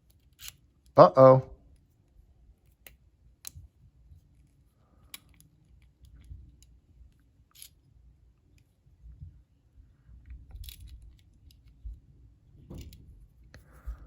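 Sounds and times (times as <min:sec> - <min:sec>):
lock picks clicking inside lock: 0:07.5 - 0:07.8, 0:10.5 - 0:11.8.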